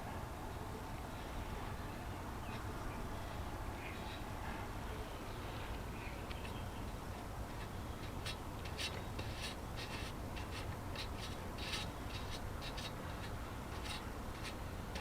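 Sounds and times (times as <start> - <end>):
hand scraping and rubbing strokes: 5.4 - 15.0.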